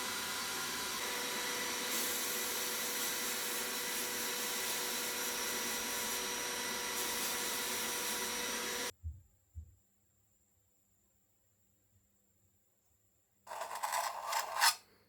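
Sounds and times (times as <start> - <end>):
machine hiss with hum: 0.0 - 8.9.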